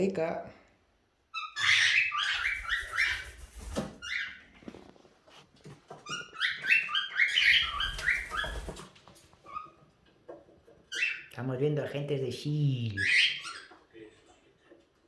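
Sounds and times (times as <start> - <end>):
parrot chirping: 1.3 - 4.5, 6.0 - 8.8, 9.4 - 10.0, 10.8 - 11.4, 12.9 - 14.0.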